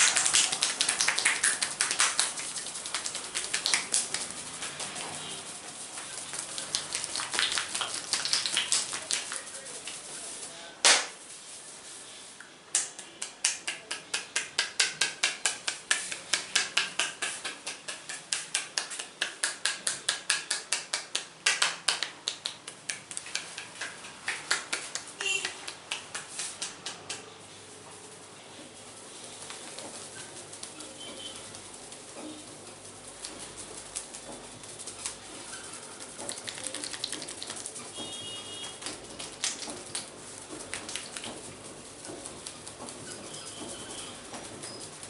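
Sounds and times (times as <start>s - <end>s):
hands slapping on scalp: 0.0s - 5.0s, 6.0s - 10.1s, 10.8s - 11.2s, 12.4s - 27.3s, 33.2s - 37.8s, 38.7s - 43.0s
loud sharp snap: 10.8s - 11.2s, 12.7s - 27.3s.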